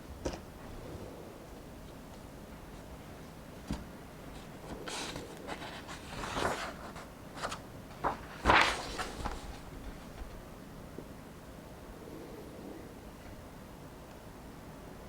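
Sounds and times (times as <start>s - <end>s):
book pages turning: 4.4s - 10.4s.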